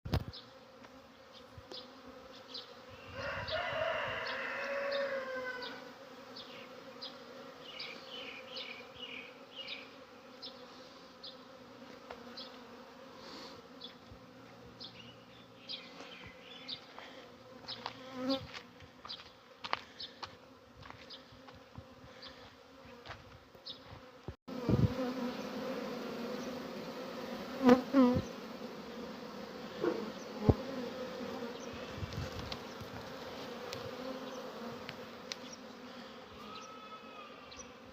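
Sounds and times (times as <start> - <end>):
pitched bee call: 0.1 - 19.2, 22.1 - 37.9
bees buzzing: 0.1 - 37.9.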